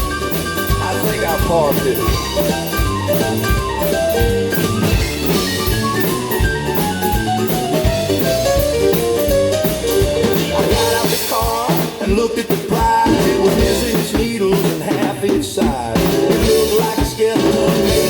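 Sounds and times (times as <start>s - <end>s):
guitar playing melody: 0.0s - 11.1s
drum kit beat: 0.0s - 18.0s.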